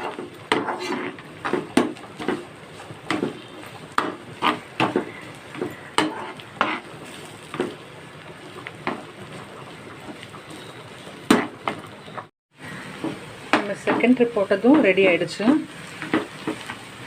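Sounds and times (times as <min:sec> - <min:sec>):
spoon scraping a pan: 0:00.0 - 0:07.8, 0:08.6 - 0:11.9
oil sizzling: 0:00.0 - 0:17.0.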